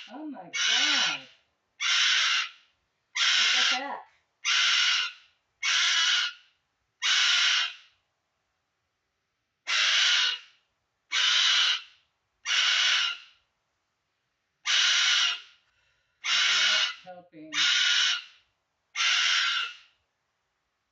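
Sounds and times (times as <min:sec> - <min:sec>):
pet bird screaming: 0:00.0 - 0:02.6, 0:03.2 - 0:06.4, 0:07.0 - 0:07.9, 0:09.7 - 0:10.5, 0:11.1 - 0:13.3, 0:14.6 - 0:15.6, 0:16.2 - 0:18.4, 0:19.0 - 0:19.9.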